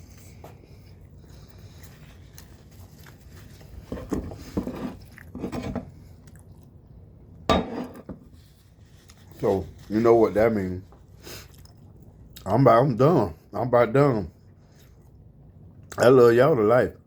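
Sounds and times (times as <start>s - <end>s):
person chewing and biting: 4.4s - 5.4s, 6.1s - 6.8s.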